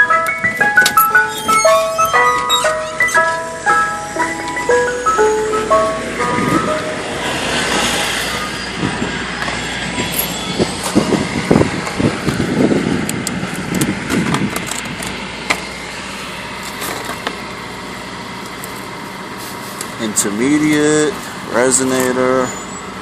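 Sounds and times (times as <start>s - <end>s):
low traffic hum: 0.0s - 23.0s
motor vehicle passing: 0.7s - 13.0s.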